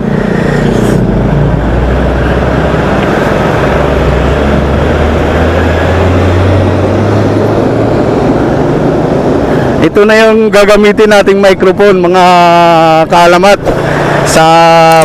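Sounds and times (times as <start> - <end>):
wind rushing on microphone: 0.0 - 11.6
motorcycle engine hum: 0.0 - 15.0.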